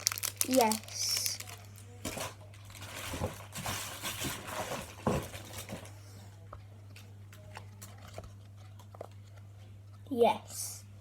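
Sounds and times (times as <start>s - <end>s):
fidget toys rustling and clicking: 0.0s - 1.6s.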